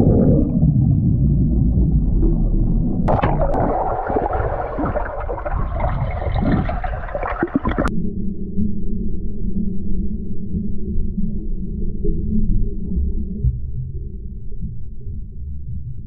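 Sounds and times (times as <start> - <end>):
water bubbling and gurgling: 0.0 - 7.9
muffled underwater rumble: 0.0 - 16.0
sharp pops underwater: 3.0 - 7.9.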